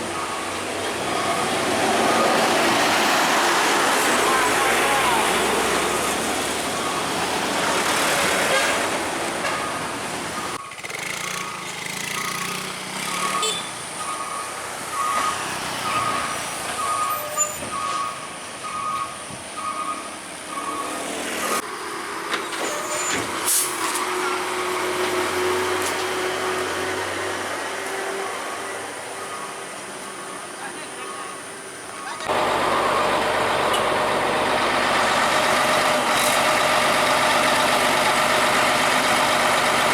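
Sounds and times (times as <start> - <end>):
truck engine drone: 0.0 - 39.9
air brakes hissing: 22.6 - 24.1.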